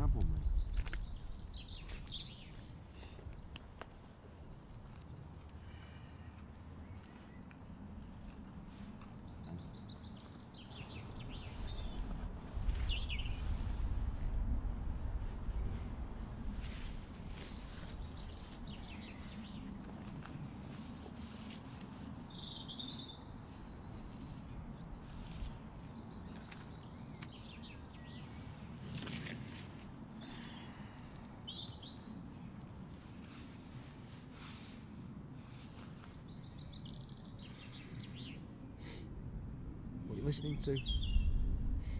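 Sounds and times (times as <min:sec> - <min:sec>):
low rumble: 0:00.0 - 0:02.0, 0:40.8 - 0:41.9
birds chirping and twittering: 0:00.0 - 0:41.9.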